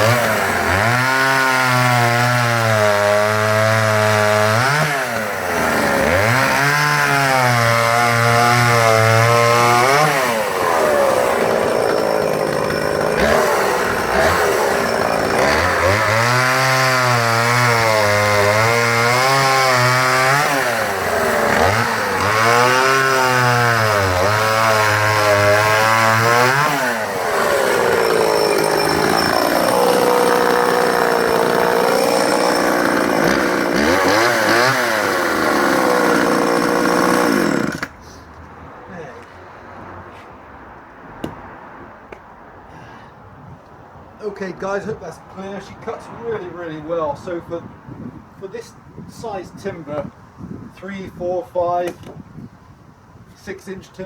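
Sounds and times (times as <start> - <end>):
chainsaw cutting logs: 0.0 - 38.0.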